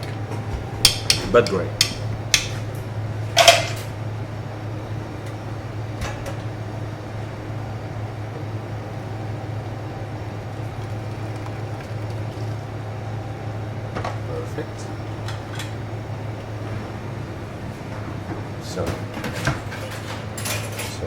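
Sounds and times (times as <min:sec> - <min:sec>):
kitchen ventilation hum: 0:00.0 - 0:21.0.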